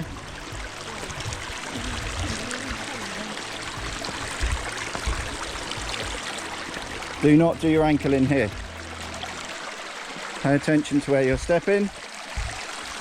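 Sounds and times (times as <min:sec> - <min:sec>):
low thumps: 0:00.0 - 0:09.0, 0:12.3 - 0:12.8
river water rushing over rocks: 0:00.0 - 0:13.0.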